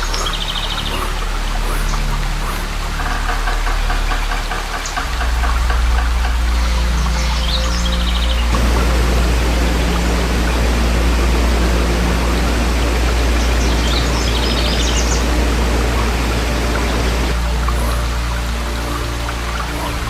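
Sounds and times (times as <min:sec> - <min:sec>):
bird chirps: 0:00.0 - 0:02.8, 0:17.4 - 0:20.0
stream water rushing: 0:00.0 - 0:03.1, 0:08.6 - 0:20.0.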